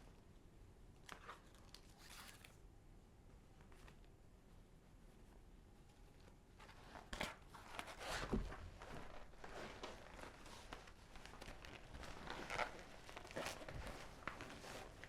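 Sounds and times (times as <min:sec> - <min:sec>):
rustling: 0:06.1 - 0:15.0.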